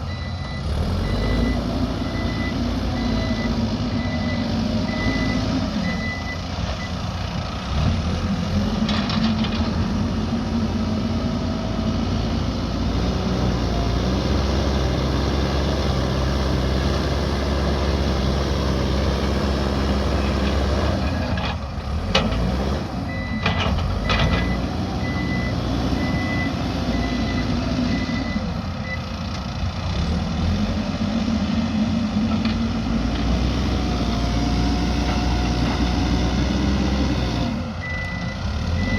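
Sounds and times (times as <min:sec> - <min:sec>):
diesel engine running: 0:00.0 - 0:38.9
reversing alarm beeps: 0:00.1 - 0:06.9, 0:23.1 - 0:29.0, 0:37.8 - 0:38.9.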